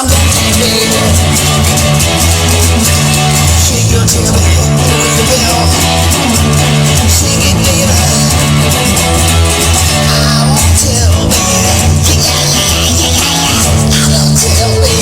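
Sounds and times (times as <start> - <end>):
bass line: 0.0 - 15.0
guitars playing: 0.0 - 15.0.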